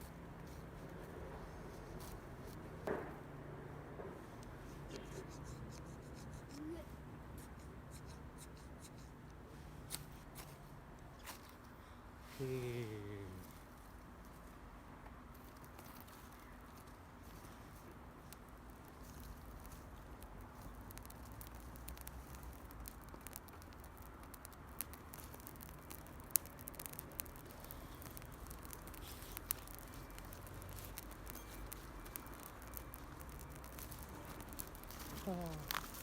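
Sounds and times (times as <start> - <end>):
low background rumble: 0.0 - 36.0
dry twigs and leaves crackling: 15.3 - 36.0.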